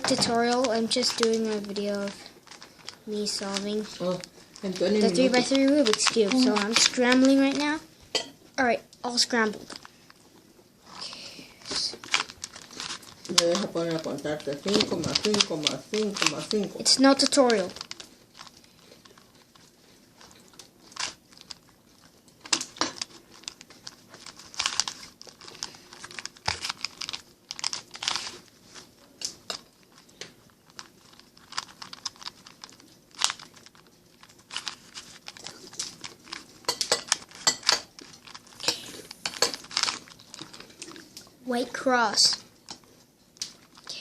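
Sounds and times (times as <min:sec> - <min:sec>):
puzzle cube clicking and scraping: 0:00.1 - 0:07.8, 0:10.9 - 0:21.6, 0:22.5 - 0:28.5, 0:29.4 - 0:41.0.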